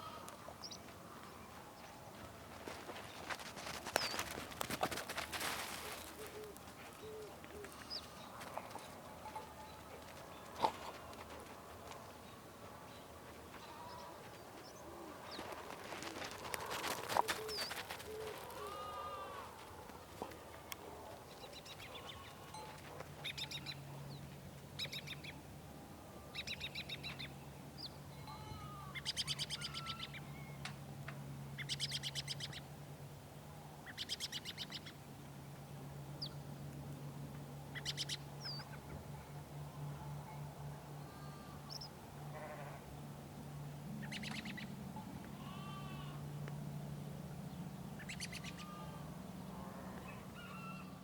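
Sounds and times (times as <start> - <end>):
livestock bleating: 0.0 - 0.3, 18.5 - 19.5, 28.1 - 29.0, 41.0 - 41.7, 42.3 - 42.9, 45.3 - 46.2, 48.5 - 50.9.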